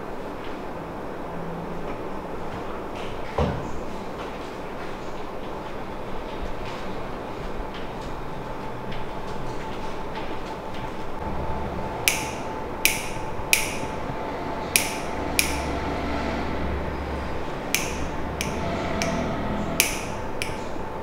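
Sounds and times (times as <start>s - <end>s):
steady background hum: 0.0s - 21.0s.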